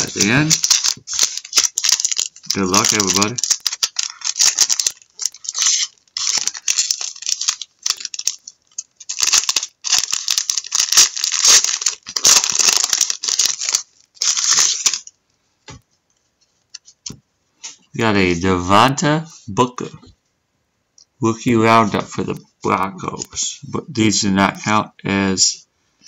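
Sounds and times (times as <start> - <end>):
wrapper being torn and crinkled: 0.0 - 15.2.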